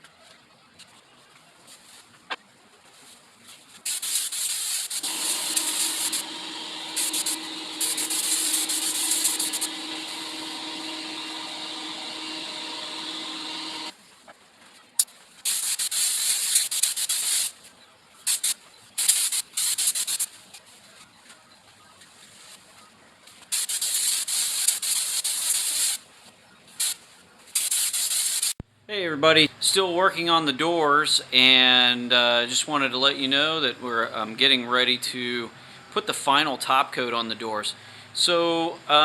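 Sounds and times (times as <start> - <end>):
spray gun hissing bursts: 3.9 - 13.9, 15.4 - 17.5, 23.5 - 26.0, 27.6 - 28.6
steady motor hum: 5.0 - 13.9.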